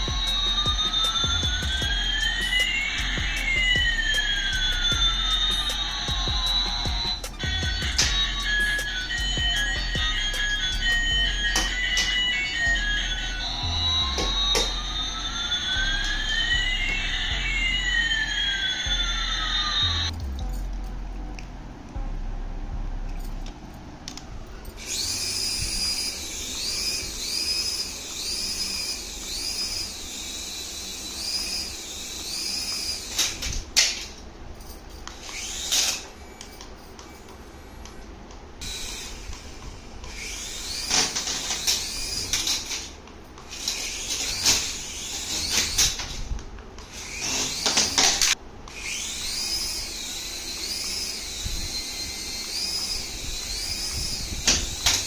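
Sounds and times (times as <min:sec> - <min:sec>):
toy warbling electronic tone: 0:00.0 - 0:18.4.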